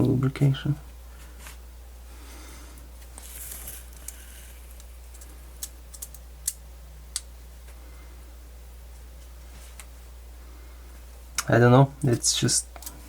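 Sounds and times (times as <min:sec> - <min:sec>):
steady low hum: 0:00.0 - 0:13.0
soft rustle: 0:03.0 - 0:05.0.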